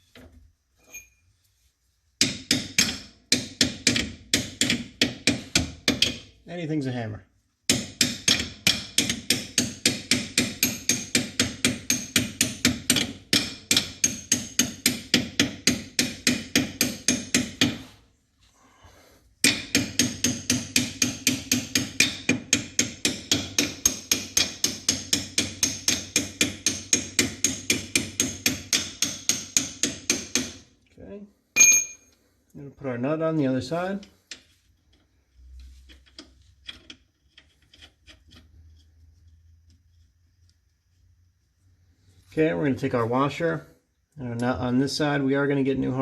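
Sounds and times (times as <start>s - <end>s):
metal on metal hammering: 2.2s - 6.4s, 7.7s - 17.9s, 19.4s - 30.7s.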